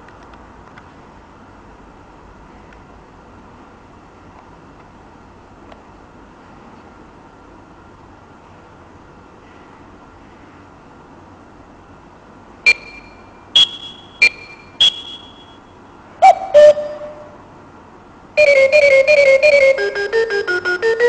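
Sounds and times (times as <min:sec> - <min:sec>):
rapid beeping tune: 0:12.7 - 0:15.6, 0:18.4 - 0:21.0
short high beeps: 0:12.7 - 0:15.6.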